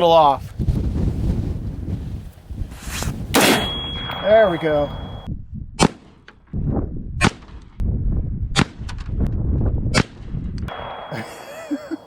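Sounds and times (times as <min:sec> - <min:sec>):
rifle shots: 0:03.4 - 0:06.1, 0:10.7 - 0:12.0.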